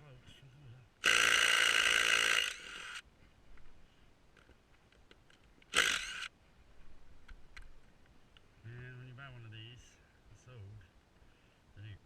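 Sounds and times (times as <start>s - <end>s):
power tool whirring: 1.0s - 3.0s, 5.7s - 6.3s.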